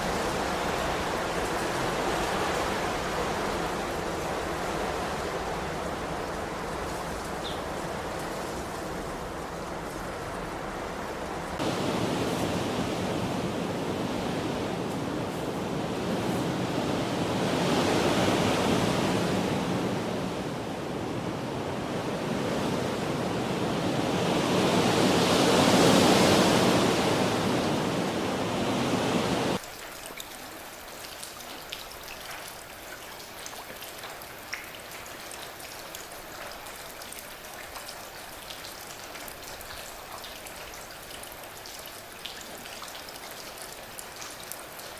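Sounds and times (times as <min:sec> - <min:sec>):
rushing weather noise: 0:00.0 - 0:29.6
soft rain hiss: 0:00.0 - 0:44.9
rain drops ticking: 0:29.6 - 0:44.9.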